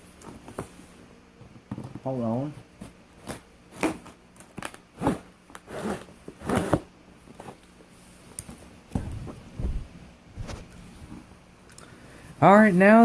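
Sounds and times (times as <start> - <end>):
quiet handling noise: 7.2 - 11.8.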